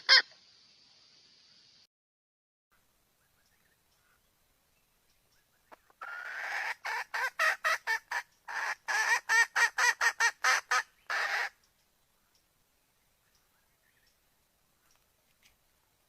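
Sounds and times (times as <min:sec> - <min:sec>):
hen calling: 0:00.0 - 0:00.4, 0:05.4 - 0:11.6.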